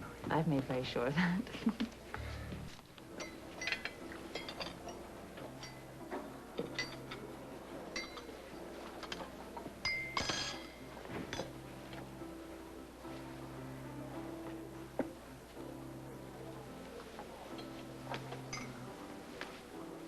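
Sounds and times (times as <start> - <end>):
soft background music: 0.0 - 20.0
glasses and dishes clinking: 3.1 - 11.5, 17.6 - 18.9.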